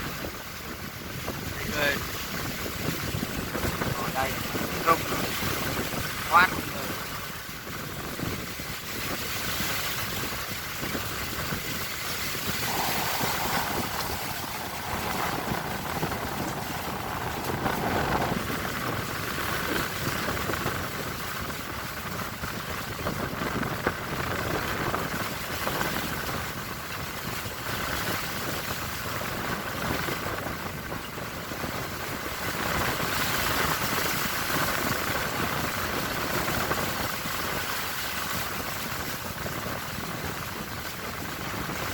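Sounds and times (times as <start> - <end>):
stormy sea waves: 0.0 - 41.9
strong sea wind: 0.0 - 41.9.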